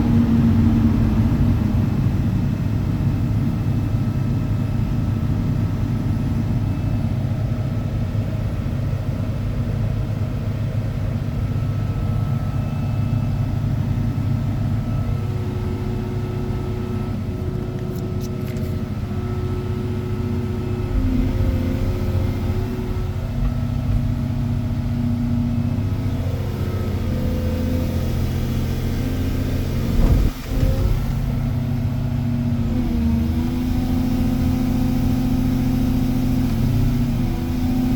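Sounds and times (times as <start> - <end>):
excavator diesel engine running: 0.0 - 37.9.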